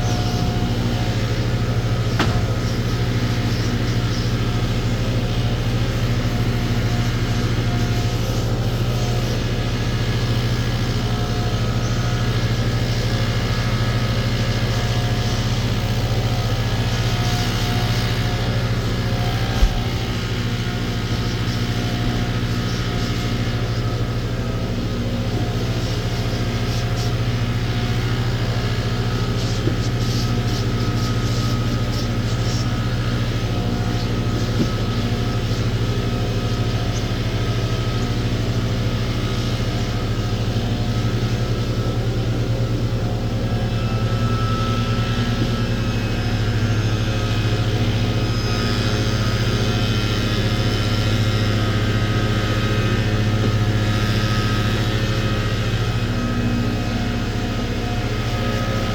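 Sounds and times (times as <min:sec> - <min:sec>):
engine running steadily: 0:00.0 - 0:58.9
short knock: 0:02.2 - 0:02.8.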